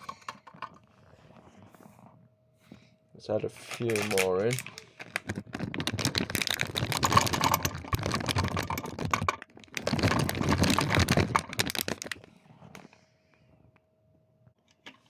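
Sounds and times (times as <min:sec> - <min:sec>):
hard pellets clattering into hopper: 0:05.8 - 0:12.1.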